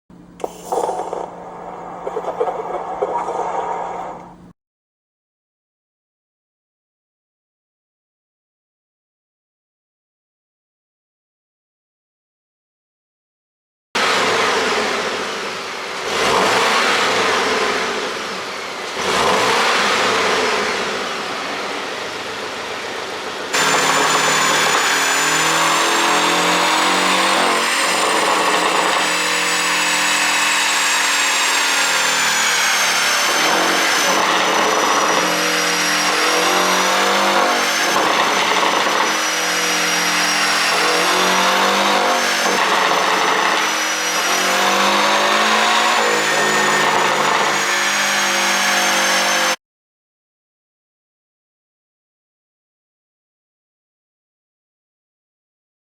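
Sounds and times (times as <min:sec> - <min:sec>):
high steady whine: 0:00.3 - 0:04.5
car engine revving: 0:14.0 - 0:49.6.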